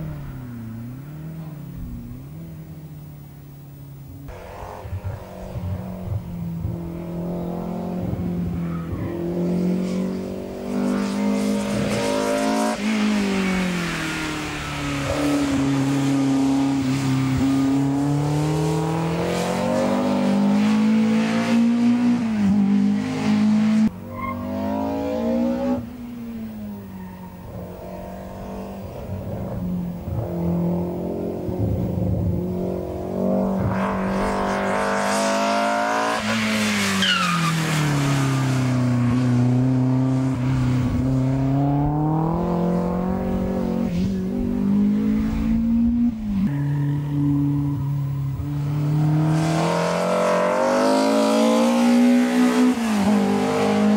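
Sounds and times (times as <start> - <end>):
race car engine revving: 4.3 - 53.9
tyre squeal: 24.0 - 24.7.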